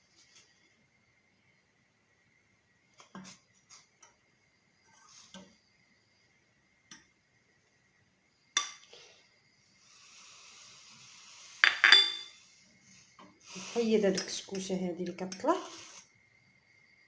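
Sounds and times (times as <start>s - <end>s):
metal spoon tapping saucepan: 8.6s - 8.8s, 11.6s - 12.3s.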